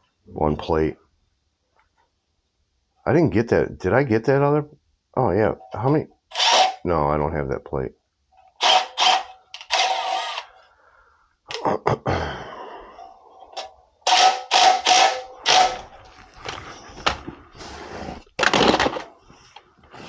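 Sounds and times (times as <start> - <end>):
cordless drill motor whine: 6.3 - 6.8, 8.6 - 10.5, 14.1 - 15.9.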